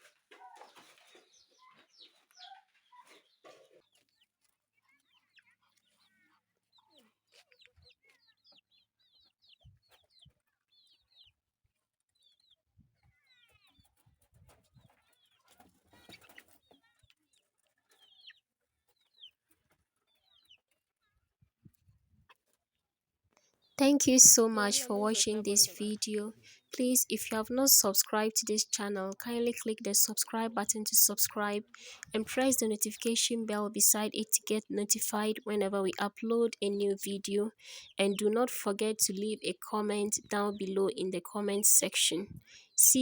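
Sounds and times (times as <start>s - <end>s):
poultry clucking: 23.9s - 43.0s.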